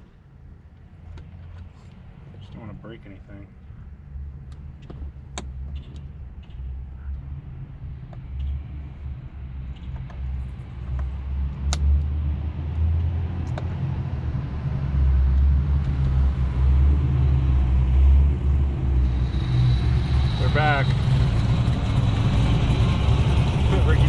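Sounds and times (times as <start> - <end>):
car engine rumble: 0.0 - 24.0.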